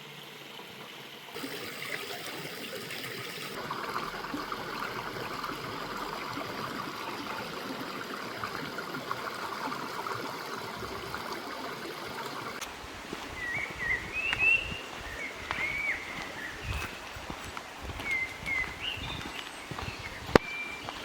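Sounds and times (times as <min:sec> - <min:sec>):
stream water rushing: 0:00.0 - 0:21.0
small bird chirping: 0:17.9 - 0:21.0.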